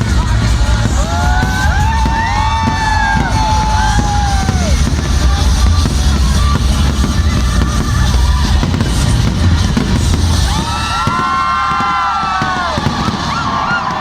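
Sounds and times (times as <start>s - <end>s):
loud music with bass beat: 0.0s - 13.3s
crowd whooping: 0.0s - 14.0s
fireworks bursting: 0.0s - 14.0s.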